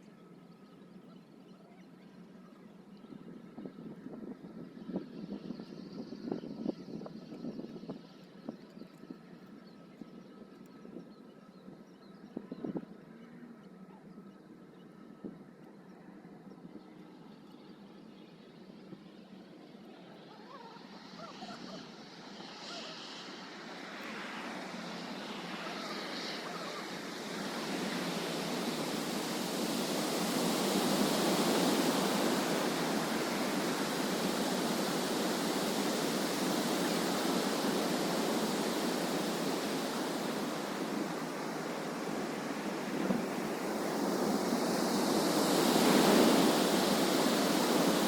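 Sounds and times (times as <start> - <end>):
wings of a flock whooshing: 20.1 - 48.0.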